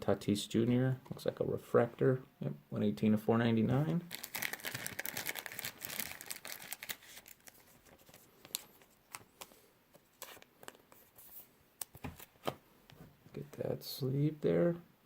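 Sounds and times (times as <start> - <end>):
plastic sleeve crinkling: 3.8 - 12.5.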